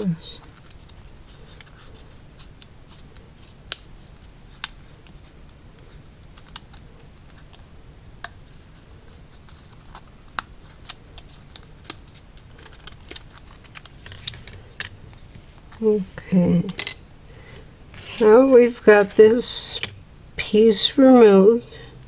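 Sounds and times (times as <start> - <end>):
steady low hum: 7.6 - 22.0.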